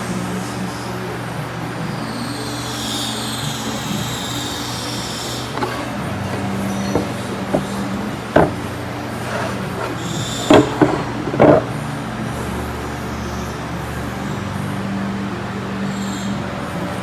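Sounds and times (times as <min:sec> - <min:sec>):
sharp knocks: 0:05.6 - 0:11.8.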